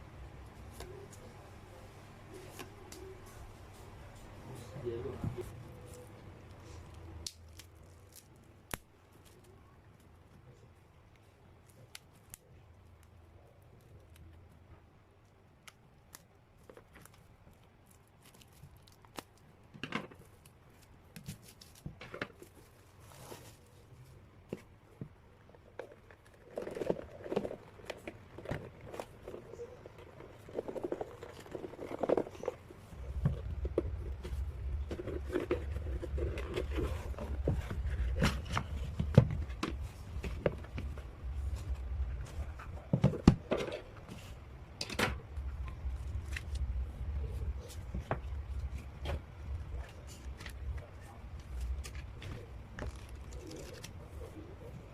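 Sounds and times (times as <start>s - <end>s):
plastic wrap crinkling and tearing: 16.1s - 19.5s.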